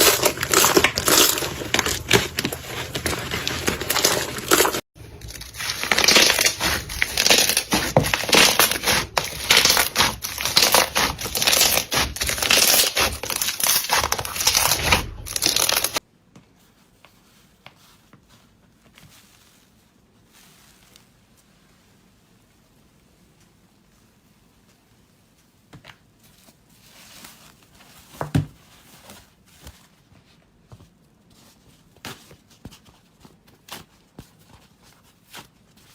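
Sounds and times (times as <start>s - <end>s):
slime squished by hand: 0.0s - 16.0s
faint handling sounds: 0.0s - 35.9s.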